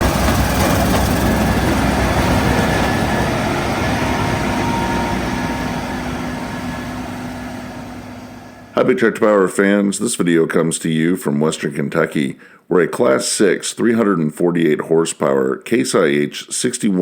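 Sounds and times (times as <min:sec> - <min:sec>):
combine harvester running: 0:00.0 - 0:08.8.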